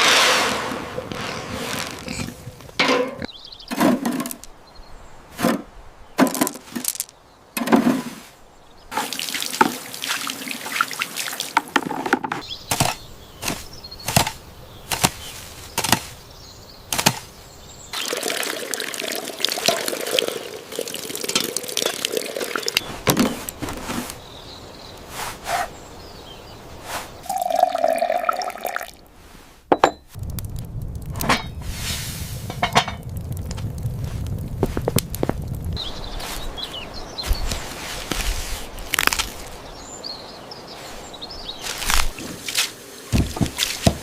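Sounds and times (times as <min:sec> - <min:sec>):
water running and splashing: 0:08.9 - 0:12.1, 0:17.1 - 0:24.2, 0:26.9 - 0:29.0, 0:30.2 - 0:44.0.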